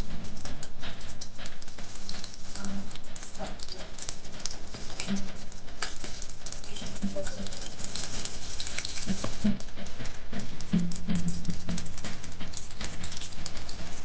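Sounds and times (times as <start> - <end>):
hot oil crackling and sizzling: 0.0 - 14.0.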